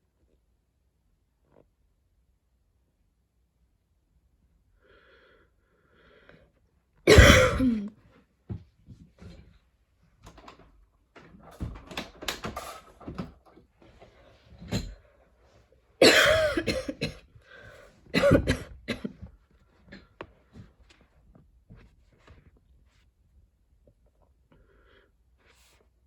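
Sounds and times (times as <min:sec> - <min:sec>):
woman coughing: 0:07.1 - 0:07.9, 0:16.0 - 0:17.2, 0:18.2 - 0:19.2.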